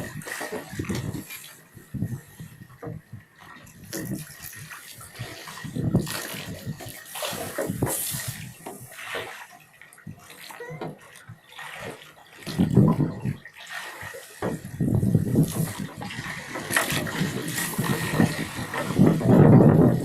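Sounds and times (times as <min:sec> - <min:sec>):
water splashing and sloshing: 0:00.0 - 0:20.0.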